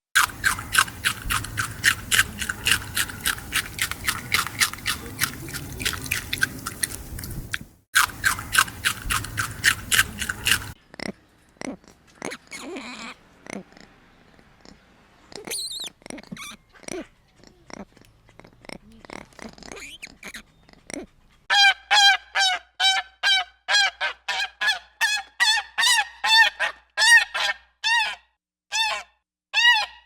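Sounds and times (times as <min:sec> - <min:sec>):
small animal crunching food: 0:00.2 - 0:21.4.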